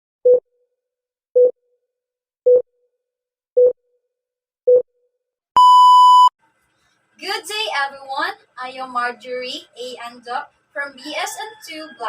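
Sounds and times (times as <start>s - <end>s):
electronic beeps: 5.6s - 6.3s.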